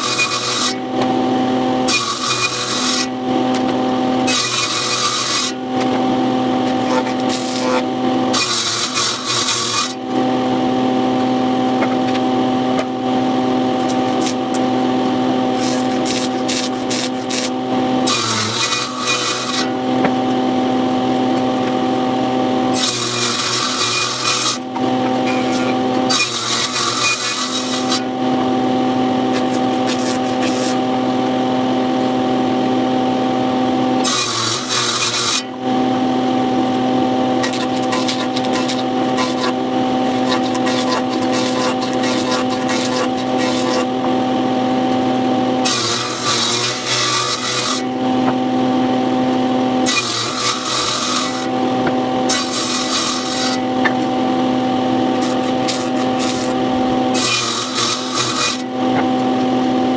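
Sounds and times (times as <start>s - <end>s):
power tool motor humming: 0.0s - 59.9s
rasping wood cutting: 0.0s - 59.9s.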